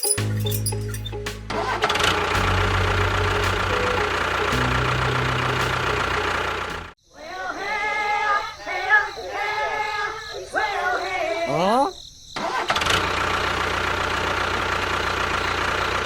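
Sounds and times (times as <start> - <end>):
tractor engine running: 0.2 - 7.0, 12.8 - 16.0
short wavering voice-like sounds: 11.5 - 12.0.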